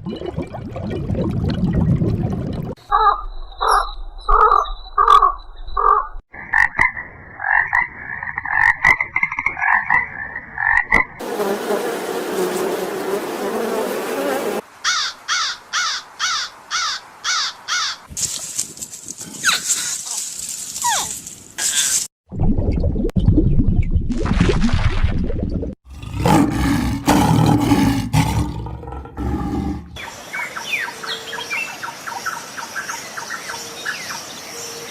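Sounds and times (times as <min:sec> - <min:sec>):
frogs croaking: 0:02.9 - 0:11.1.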